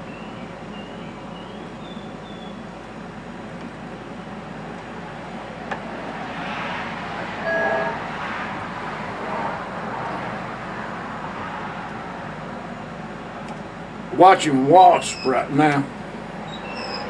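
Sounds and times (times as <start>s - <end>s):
vehicle passing on road: 5.4s - 13.4s
brief higher tone: 7.4s - 8.1s.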